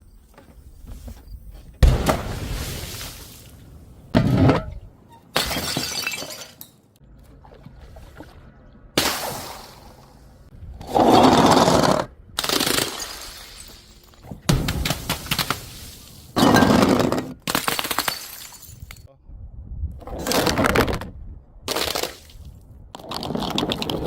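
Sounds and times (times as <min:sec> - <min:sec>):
glass bottles smashing: 0:05.4 - 0:06.7, 0:12.9 - 0:14.4, 0:15.0 - 0:19.1.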